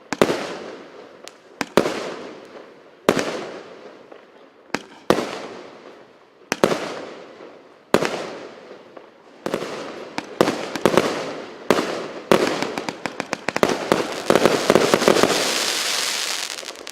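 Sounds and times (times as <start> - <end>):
dense firework crackling: 10.2 - 16.9
firework cake firing bangs: 12.3 - 16.9.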